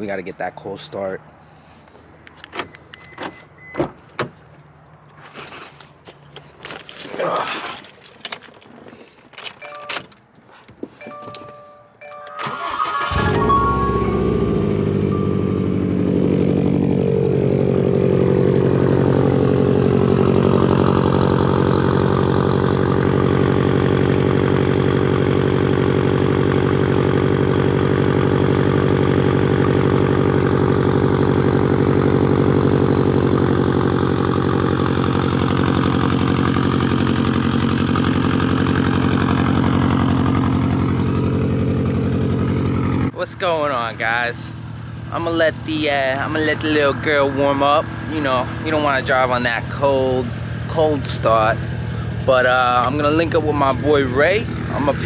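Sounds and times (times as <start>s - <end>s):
car engine idling: 12.4s - 55.0s.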